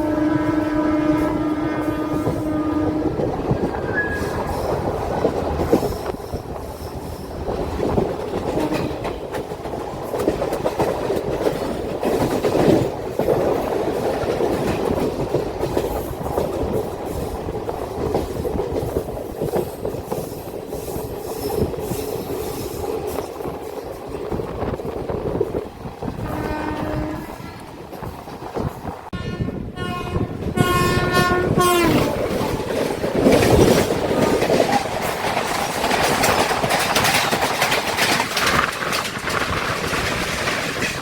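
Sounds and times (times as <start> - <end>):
train horn: 0.0 - 4.4, 8.5 - 9.1, 26.2 - 27.6, 29.1 - 32.4
train wheels clattering: 0.0 - 29.1, 30.2 - 41.0.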